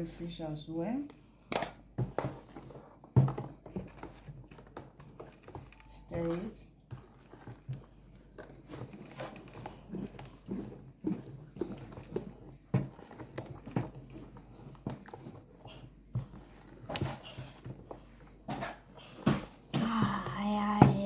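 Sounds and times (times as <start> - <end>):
spoon stirring thick batter: 1.0 - 21.0.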